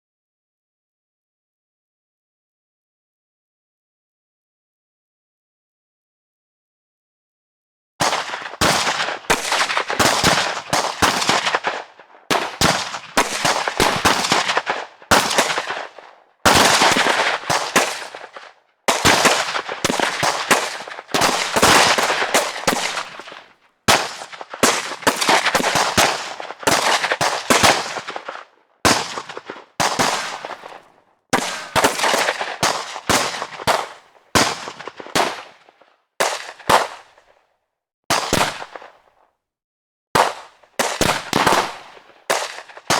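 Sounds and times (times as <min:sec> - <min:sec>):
gunfire in rapid bursts: 0:08.0 - 0:37.4, 0:38.1 - 0:39.2, 0:40.2 - 0:42.9.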